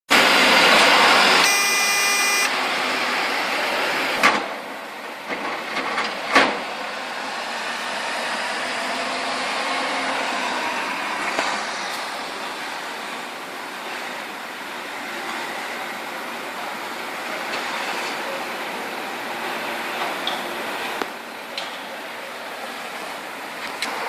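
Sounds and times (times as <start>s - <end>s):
road traffic passing: 0.1s - 24.0s
high steady tone: 1.3s - 2.6s.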